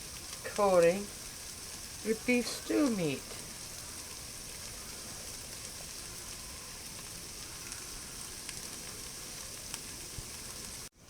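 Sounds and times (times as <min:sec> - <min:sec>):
vegetables sizzling in oil: 0:00.0 - 0:11.0.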